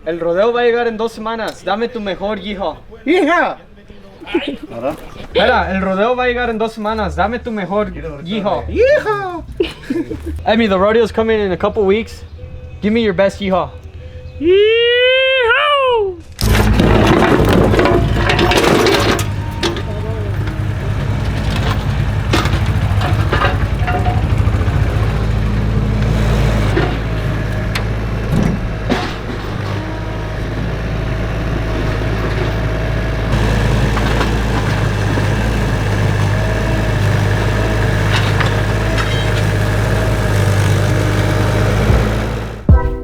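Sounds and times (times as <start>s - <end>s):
sharp metal clanks: 16.4s - 25.3s
heavy machinery engine running: 16.4s - 42.7s.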